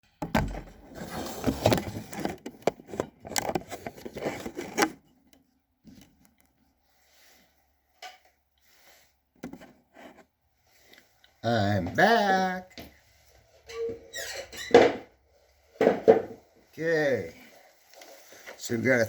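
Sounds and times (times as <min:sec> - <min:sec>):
clicking and rattling handling noise: 0:00.2 - 0:06.6.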